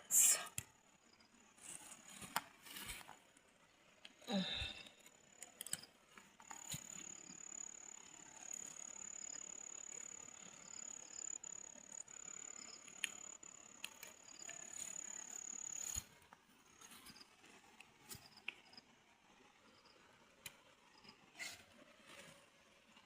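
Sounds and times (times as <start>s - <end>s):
faint clicks and rustles: 1.6s - 9.0s
insect trilling: 6.4s - 16.0s.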